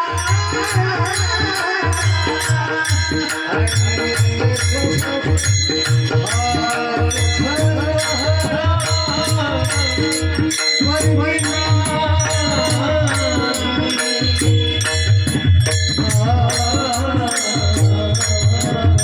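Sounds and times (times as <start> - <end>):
devotional music: 0.0 - 19.0
hand drum beat: 0.0 - 19.0
jingling metallic percussion: 0.0 - 19.0.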